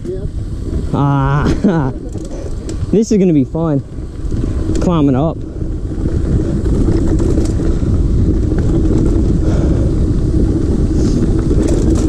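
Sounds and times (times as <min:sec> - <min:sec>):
bike rolling over dirt trail: 0:00.0 - 0:12.0
wind noise on microphone: 0:00.0 - 0:12.0.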